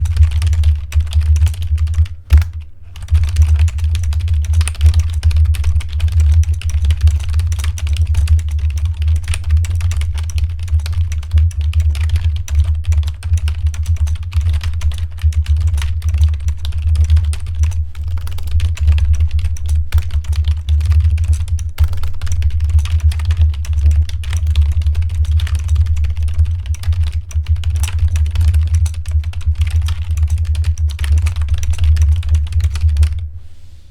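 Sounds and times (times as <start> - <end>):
keyboard typing: 0.0 - 33.2
steady low hum: 0.0 - 33.9.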